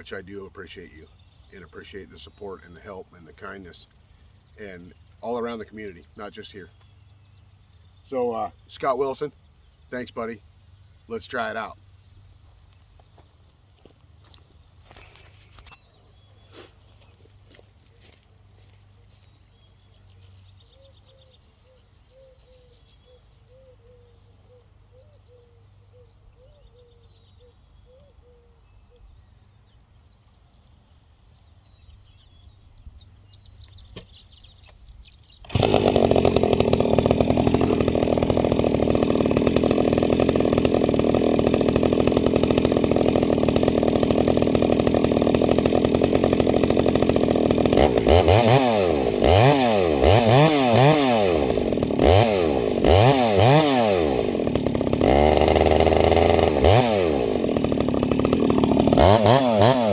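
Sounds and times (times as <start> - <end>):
faint birdsong: 0.0 - 37.2
chainsaw running and revving: 35.4 - 59.9.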